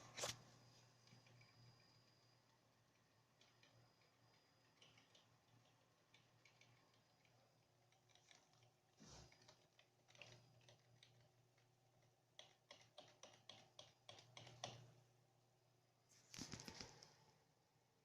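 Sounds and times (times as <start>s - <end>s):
faint high whine: 0.0s - 9.3s
hard drive clicking and ticking: 0.9s - 15.0s.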